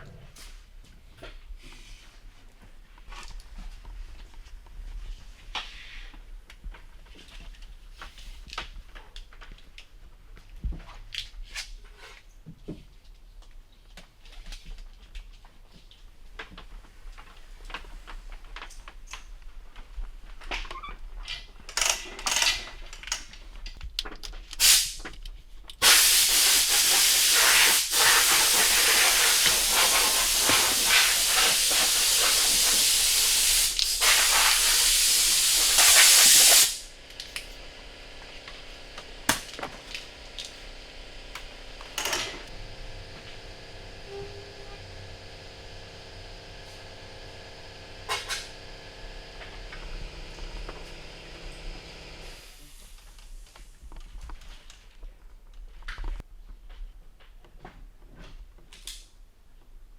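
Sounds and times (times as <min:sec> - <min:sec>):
pressurised spray hissing: 0:25.8 - 0:37.0.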